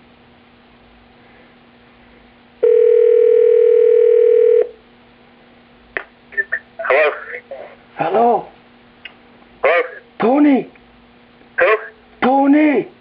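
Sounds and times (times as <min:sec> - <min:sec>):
telephone ringback tone: 0:02.6 - 0:04.8.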